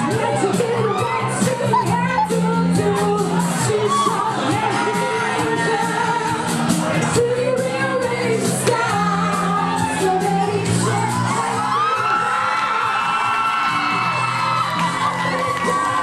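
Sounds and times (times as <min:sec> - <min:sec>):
pop music with singing: 0:00.0 - 0:16.0.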